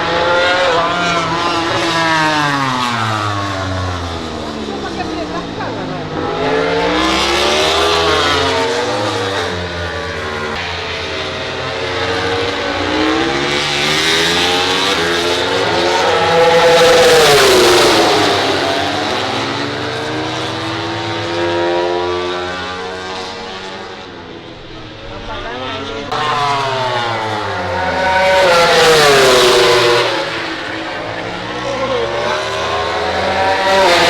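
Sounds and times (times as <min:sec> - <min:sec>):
motorcycle passing close: 0:00.0 - 0:34.0
racing motorcycles revving: 0:00.0 - 0:34.0.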